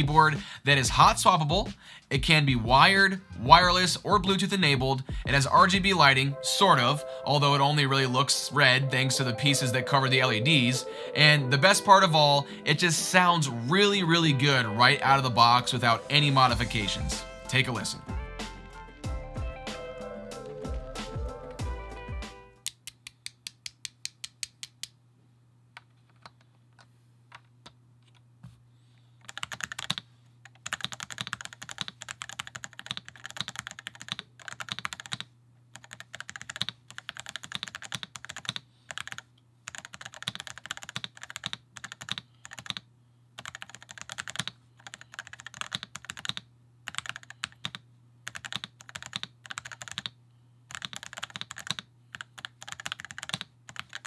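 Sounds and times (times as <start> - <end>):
mechanical keyboard typing: 29.2 - 42.8, 43.4 - 54.0.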